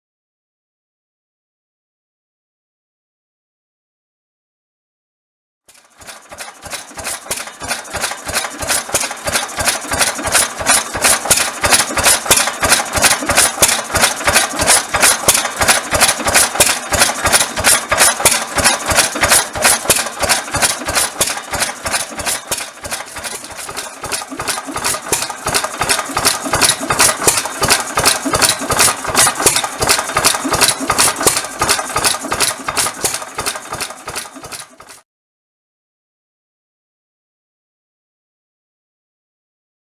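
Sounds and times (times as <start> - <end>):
stationary engine exhaust knocks: 6.0 - 34.6.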